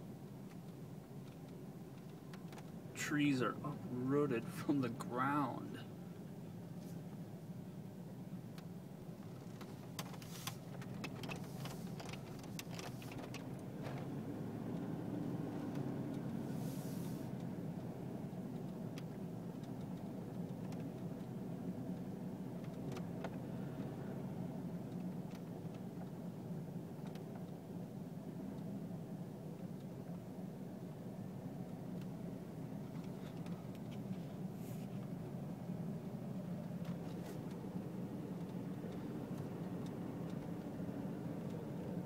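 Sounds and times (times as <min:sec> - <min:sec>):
car engine and road noise: 0:00.0 - 0:42.0
brief hiss: 0:16.5 - 0:17.3.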